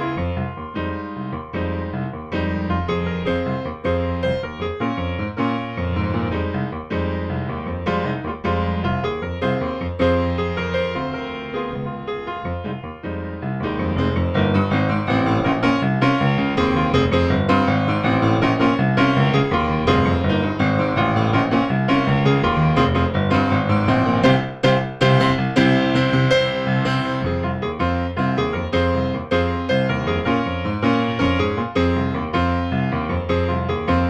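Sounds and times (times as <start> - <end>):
keyboard postlude: 0.0 - 34.0.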